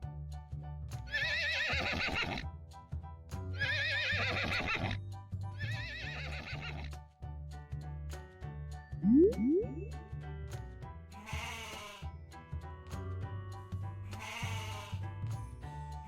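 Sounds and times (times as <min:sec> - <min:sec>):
light background music: 0:00.0 - 0:16.0
horse whinnying: 0:01.1 - 0:02.4, 0:03.6 - 0:05.0, 0:05.6 - 0:06.9.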